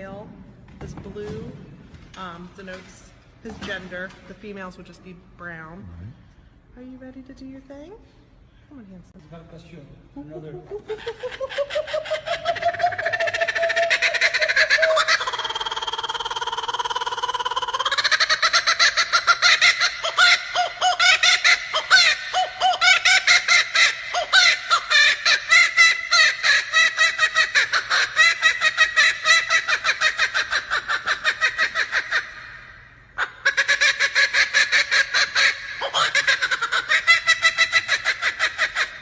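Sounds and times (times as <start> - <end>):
kookaburra laughing call: 10.4 - 39.0.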